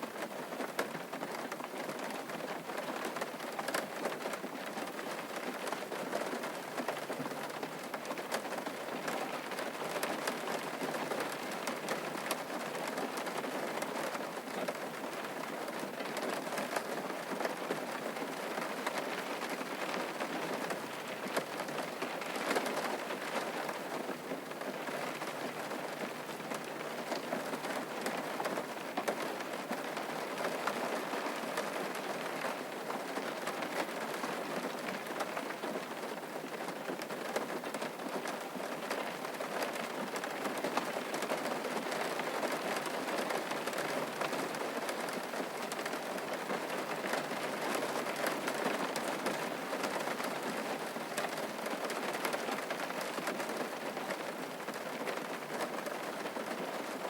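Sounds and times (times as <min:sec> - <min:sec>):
steady rain pattering: 0:00.0 - 0:57.0.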